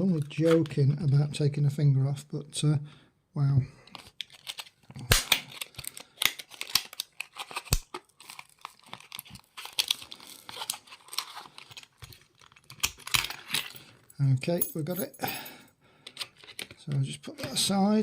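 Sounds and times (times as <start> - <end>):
packaging crinkling: 4.0 - 14.0
knife cutting plastic packaging: 4.3 - 13.6.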